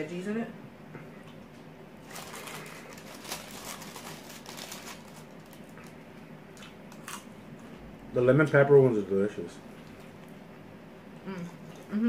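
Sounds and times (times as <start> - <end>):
chewing crunchy chicken wings: 2.0 - 7.8.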